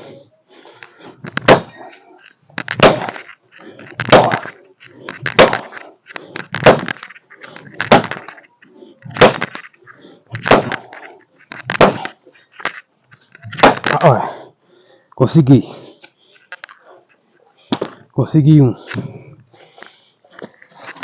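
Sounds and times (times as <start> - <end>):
axe chopping wood: 1.3 - 1.8, 2.6 - 3.2, 3.9 - 4.6, 5.2 - 5.8, 6.5 - 7.0, 7.8 - 8.3, 9.1 - 9.6, 10.3 - 10.9, 11.6 - 12.2, 13.5 - 14.0.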